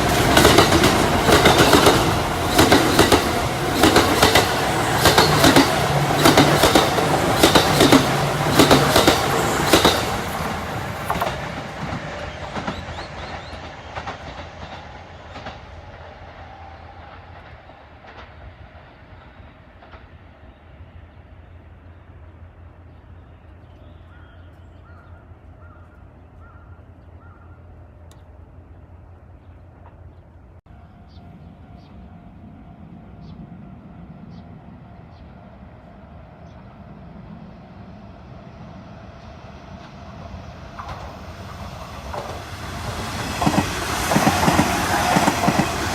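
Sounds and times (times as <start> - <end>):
train wheels clattering over rail joints: 0.0 - 15.8, 40.7 - 45.9.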